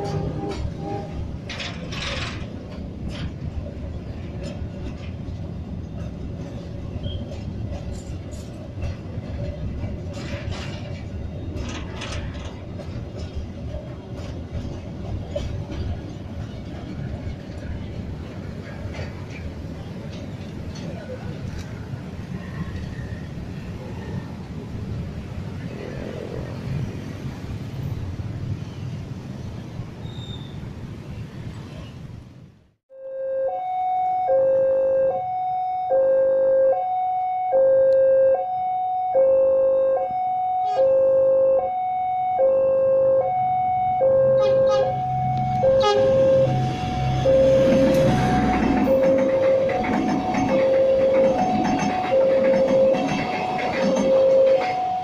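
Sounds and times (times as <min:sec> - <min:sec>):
train wheels clanking: 0:00.0 - 0:21.8, 0:45.8 - 0:55.0
train rumbling on rails: 0:00.0 - 0:32.7, 0:43.2 - 0:55.0.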